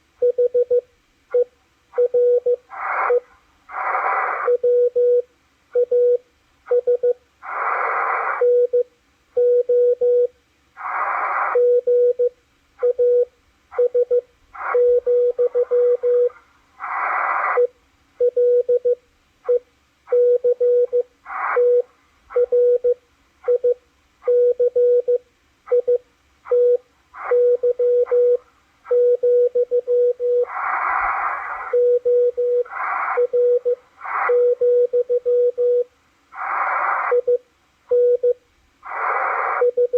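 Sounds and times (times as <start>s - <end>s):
receiver hiss: 0.0s - 39.9s
morse code tone: 11.6s - 16.4s, 17.6s - 30.5s, 31.6s - 35.9s.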